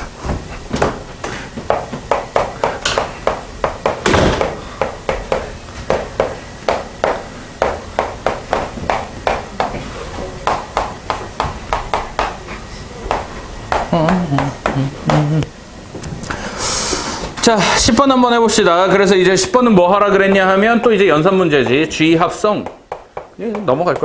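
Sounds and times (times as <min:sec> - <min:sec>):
loud knock: 0:01.7 - 0:09.7, 0:22.6 - 0:24.0
sharp irregular taps and clicks: 0:01.7 - 0:09.7, 0:10.4 - 0:12.4, 0:22.6 - 0:24.0.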